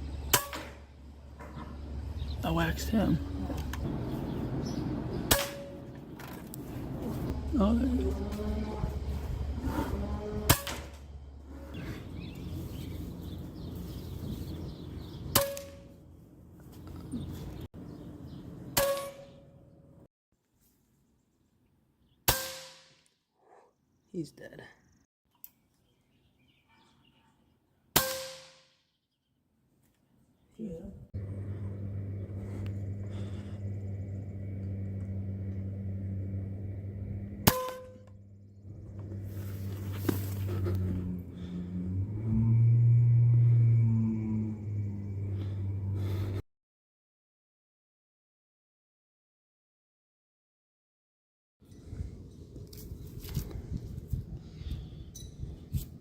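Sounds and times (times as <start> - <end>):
steady low hum: 0.0 - 15.4, 30.9 - 46.4.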